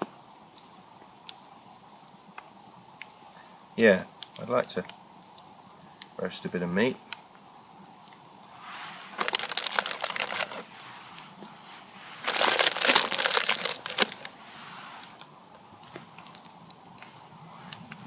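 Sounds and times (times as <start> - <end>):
packaging crinkling: 9.1 - 10.7, 12.2 - 14.3.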